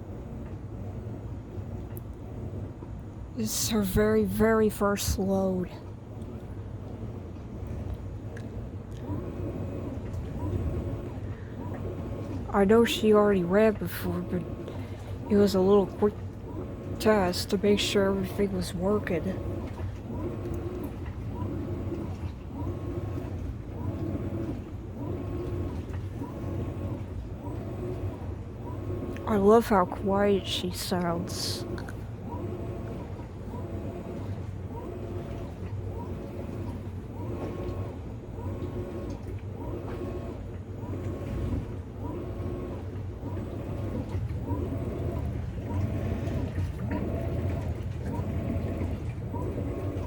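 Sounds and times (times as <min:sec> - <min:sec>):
low steady hum: 0:00.0 - 0:50.0
steady low rumble: 0:00.0 - 0:50.0
washing machine motor whirring: 0:00.0 - 0:50.0.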